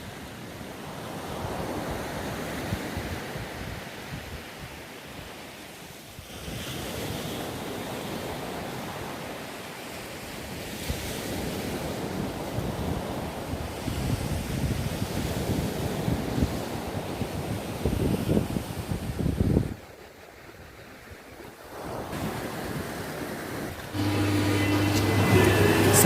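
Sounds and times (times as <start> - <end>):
wind buffeting microphone: 12.1 - 19.9.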